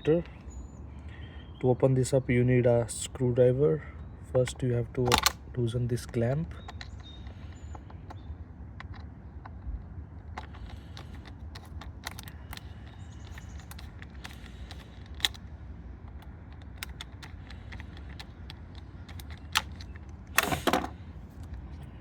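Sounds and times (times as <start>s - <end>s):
low steady rumble: 0.0s - 22.0s
screwdriver clicks and scrapes: 10.3s - 15.4s, 16.1s - 21.9s.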